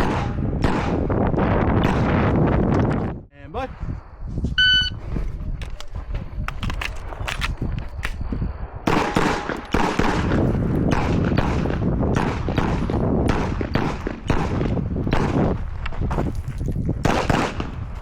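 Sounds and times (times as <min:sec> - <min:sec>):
pistol shots: 0:00.0 - 0:01.2, 0:08.8 - 0:15.6, 0:17.0 - 0:17.9
high beep: 0:04.6 - 0:05.0.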